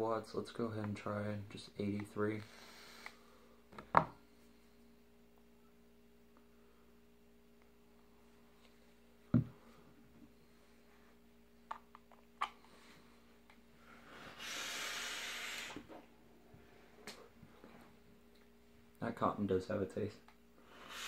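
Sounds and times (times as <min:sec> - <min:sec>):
faint steady hum: 0:00.0 - 0:21.0
breathy vapour hiss: 0:13.8 - 0:16.0, 0:20.6 - 0:21.0.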